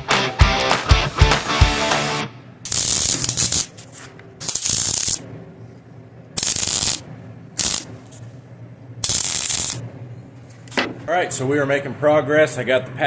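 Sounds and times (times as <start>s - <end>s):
welding arc crackling: 0.0s - 3.7s, 4.4s - 5.2s, 6.4s - 7.0s, 7.6s - 7.9s, 9.0s - 9.8s.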